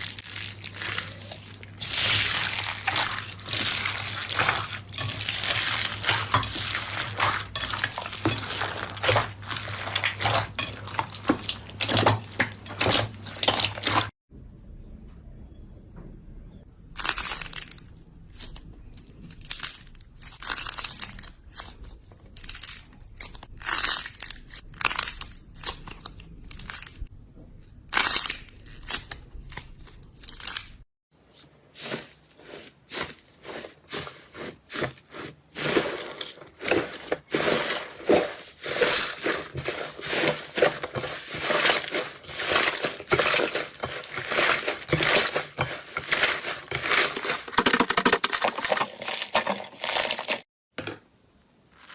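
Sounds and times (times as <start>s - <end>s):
slime crackling and popping: 0.0s - 14.1s.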